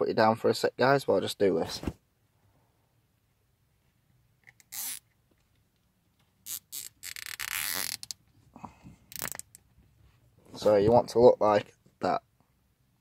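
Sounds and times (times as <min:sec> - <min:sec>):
cable tie ratcheting rasp: 0:04.6 - 0:05.0, 0:06.4 - 0:08.2, 0:09.1 - 0:09.6.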